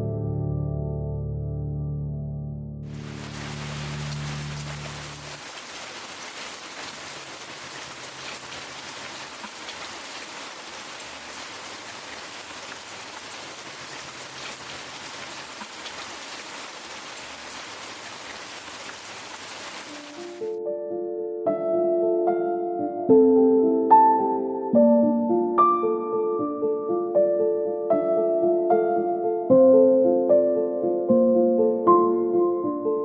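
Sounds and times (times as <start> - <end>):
steady rain falling: 2.8 - 20.6.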